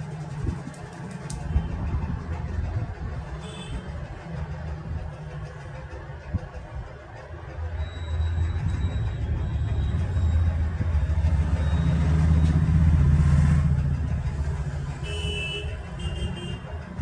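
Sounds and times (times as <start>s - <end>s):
low rumble of passing vehicle: 0.0s - 17.0s.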